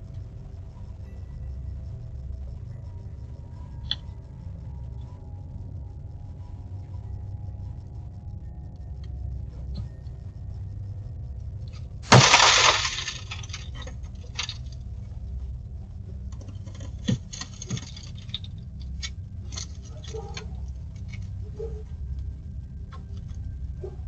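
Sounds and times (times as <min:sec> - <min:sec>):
low background hum: 0:00.0 - 0:24.0
glass breaking crash: 0:12.1 - 0:14.6.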